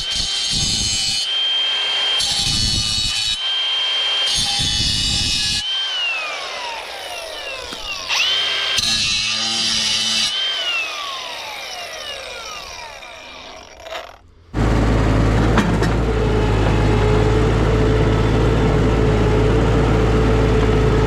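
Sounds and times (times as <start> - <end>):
blade grinding through steel: 0.0 - 14.4
cutter blade whining: 0.0 - 21.0.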